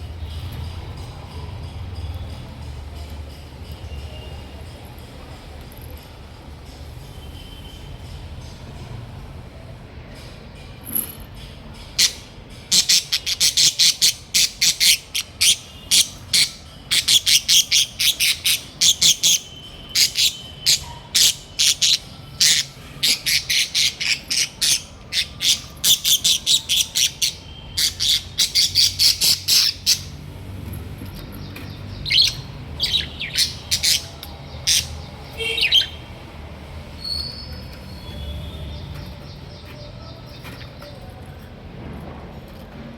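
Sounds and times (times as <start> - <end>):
parrots squawking: 12.0 - 30.2, 32.0 - 36.0.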